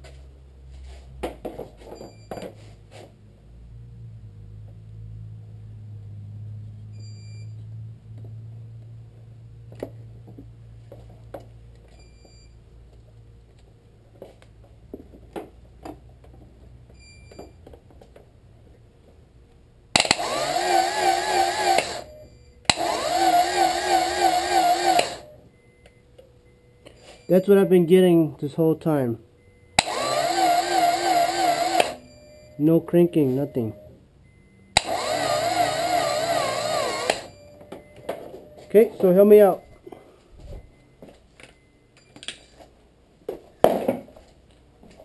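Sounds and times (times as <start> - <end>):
starter motor whining: 20.0 - 25.4, 29.8 - 32.1, 34.8 - 37.5.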